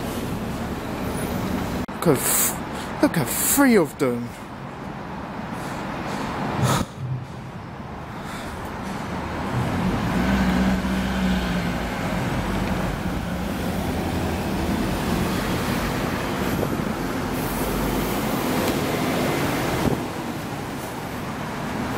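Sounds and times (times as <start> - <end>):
diesel bus engine running: 0.0 - 3.2, 4.6 - 21.9.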